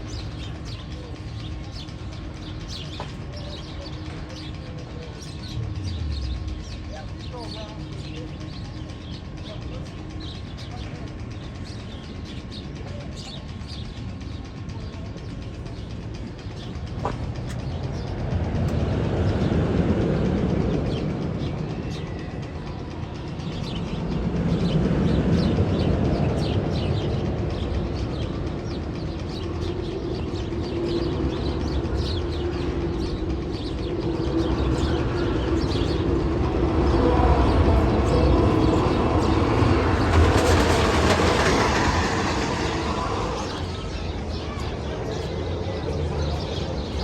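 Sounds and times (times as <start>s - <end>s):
roller coaster train rumbling: 0.0s - 47.0s
rapid clicking: 11.2s - 44.8s.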